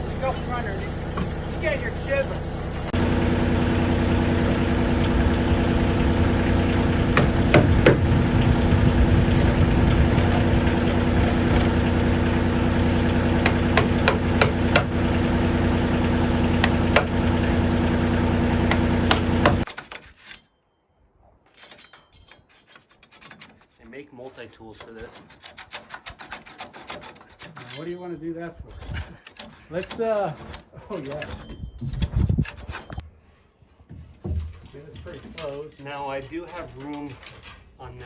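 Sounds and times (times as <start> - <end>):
engine running: 0.0 - 19.7
hammer blows on timber: 7.0 - 8.8, 13.2 - 15.2, 18.6 - 19.7.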